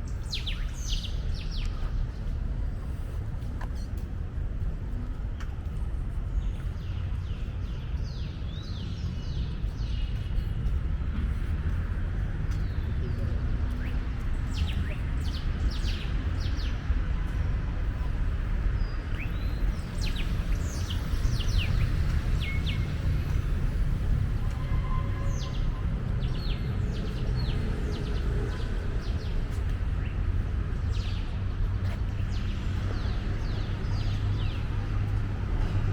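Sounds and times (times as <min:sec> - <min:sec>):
low outdoor rumble: 0:00.0 - 0:35.9
small birds chirping: 0:00.1 - 0:05.0, 0:05.6 - 0:35.3.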